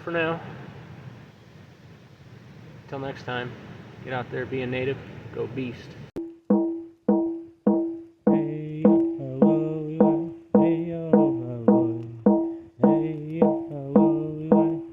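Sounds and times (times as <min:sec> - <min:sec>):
plucked melodic instrument: 0:06.2 - 0:08.1
bass line: 0:06.6 - 0:14.9.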